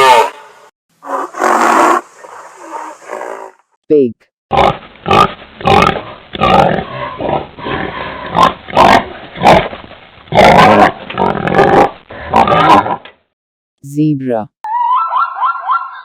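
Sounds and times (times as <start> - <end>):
pig grunting and squealing: 0.0 - 0.4, 1.0 - 3.6, 4.5 - 9.7, 10.3 - 13.0.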